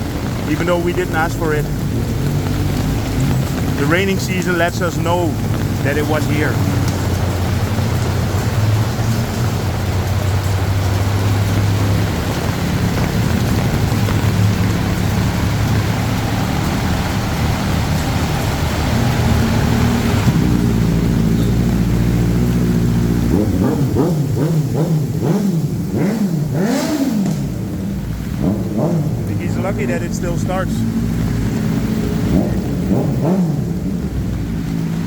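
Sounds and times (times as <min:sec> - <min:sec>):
car engine revving: 0:00.0 - 0:35.0
heavy rain hiss: 0:00.0 - 0:35.0.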